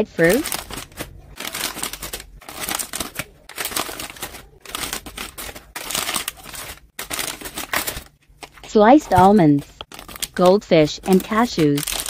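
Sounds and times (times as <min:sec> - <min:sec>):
plastic snack packaging crinkling: 0:00.0 - 0:12.0.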